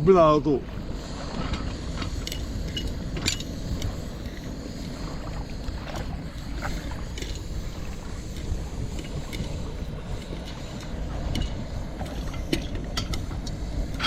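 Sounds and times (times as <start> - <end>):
wind rumble: 0.0 - 14.0.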